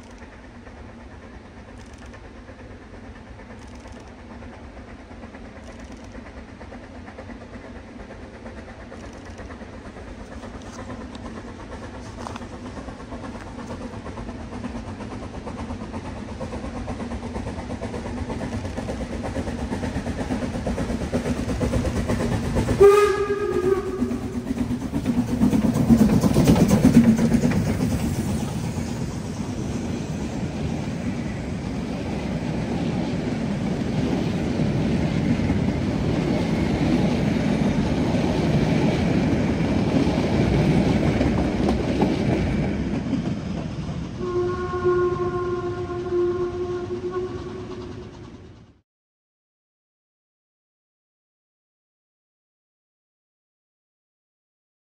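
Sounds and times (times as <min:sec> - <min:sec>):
vehicle horn blast: 0:22.8 - 0:24.1, 0:44.2 - 0:47.6.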